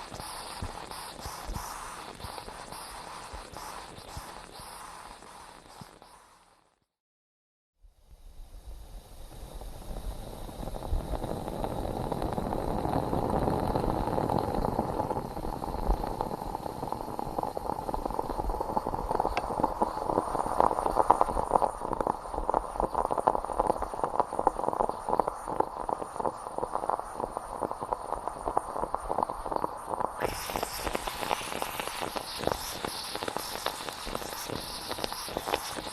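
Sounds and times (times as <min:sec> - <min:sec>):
coffee pot bubbling and sputtering: 0:00.0 - 0:06.7, 0:08.5 - 0:35.9.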